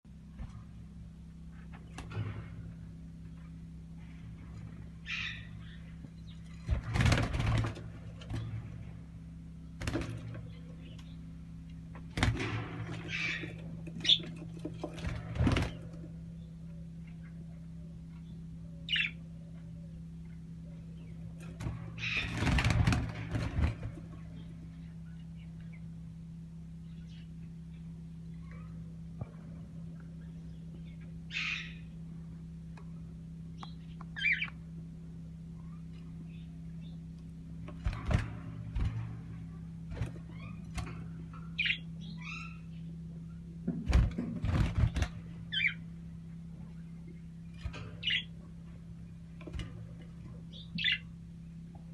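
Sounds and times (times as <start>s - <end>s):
steady electrical hum: 0.0s - 51.9s
wing flapping and scuffling: 0.2s - 17.4s, 21.1s - 25.0s, 36.9s - 41.9s, 43.6s - 51.9s
small birds chirping: 4.9s - 6.7s, 10.4s - 11.8s, 12.9s - 14.8s, 16.1s - 22.5s, 24.2s - 29.0s, 29.8s - 37.7s, 38.9s - 43.7s, 44.7s - 51.9s
bird chirp: 5.0s - 6.6s, 16.3s - 21.2s, 33.5s - 34.6s, 41.4s - 43.5s, 46.7s - 48.4s, 50.4s - 51.2s.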